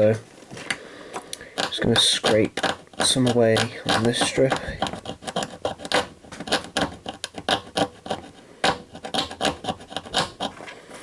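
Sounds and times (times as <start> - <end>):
scraping copper pads: 0.0 - 11.0.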